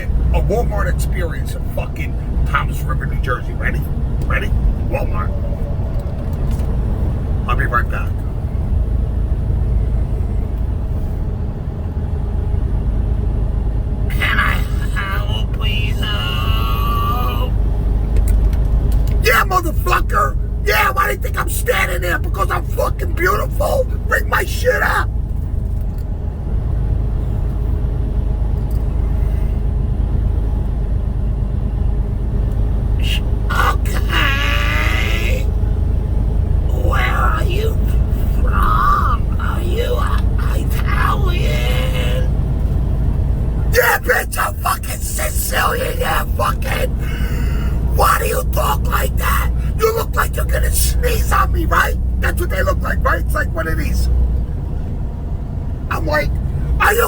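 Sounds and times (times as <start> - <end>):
voice: 0.0 - 5.6, 7.4 - 8.3, 14.1 - 17.6, 19.2 - 25.1, 33.0 - 35.6, 36.7 - 42.4, 43.7 - 54.1, 55.9 - 57.0
car engine rumbling: 0.0 - 57.0.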